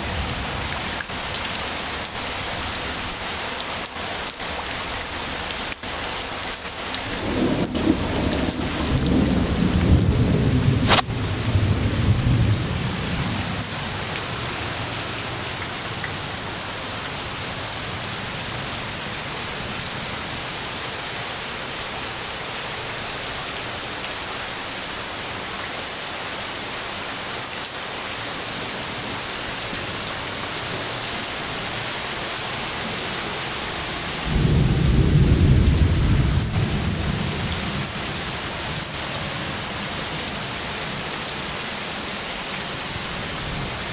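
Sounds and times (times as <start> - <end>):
steady rain falling: 0.0 - 43.9
thunder crack and rumble: 7.1 - 13.7, 34.3 - 37.9.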